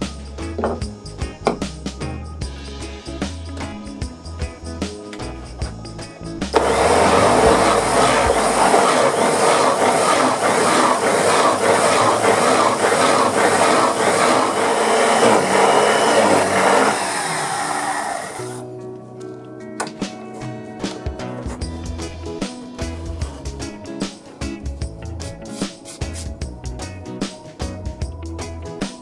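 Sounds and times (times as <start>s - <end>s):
background music: 0.0s - 29.0s
power tool running loudly: 6.5s - 18.6s.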